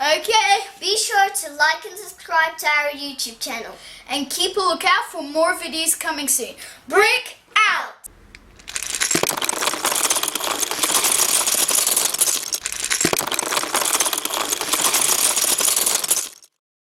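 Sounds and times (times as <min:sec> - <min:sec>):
small hard objects rattling: 0:08.3 - 0:16.5.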